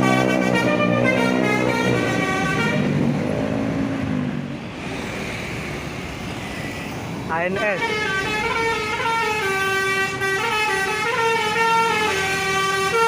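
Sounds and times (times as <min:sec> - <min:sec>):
musical bus horn: 0:00.0 - 0:03.0, 0:07.5 - 0:13.0
traffic noise: 0:00.0 - 0:13.0.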